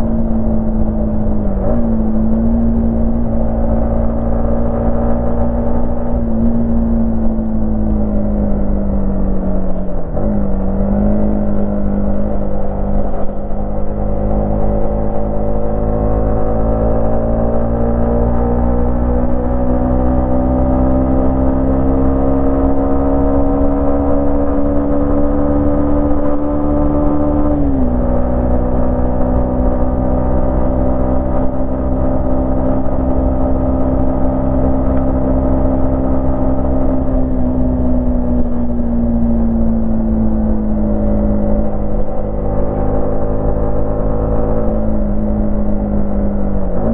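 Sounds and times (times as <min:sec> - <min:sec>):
motorcycle engine accelerating: 0:00.0 - 0:46.9.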